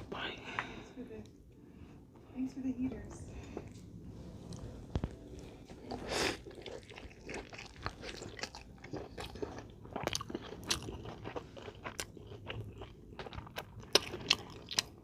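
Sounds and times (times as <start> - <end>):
chewing and crunching sandwich: 4.4 - 15.0.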